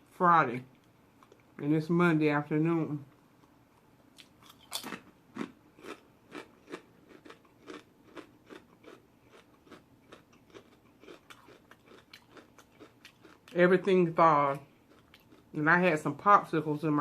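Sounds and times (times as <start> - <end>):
chewing with wet mouth clicks: 4.2 - 13.6, 14.9 - 15.4.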